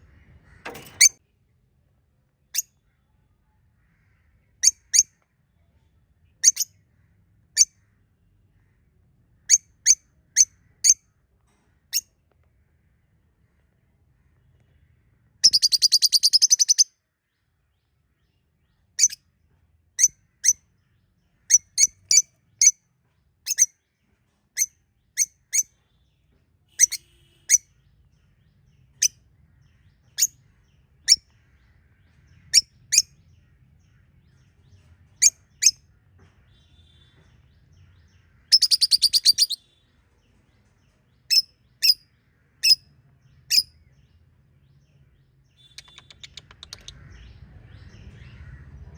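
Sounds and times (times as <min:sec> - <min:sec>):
budgerigar chirps: 0:15.4 - 0:16.8, 0:26.7 - 0:27.6, 0:38.5 - 0:39.6, 0:45.6 - 0:47.0
budgerigar trilling chatter: 0:38.5 - 0:39.6.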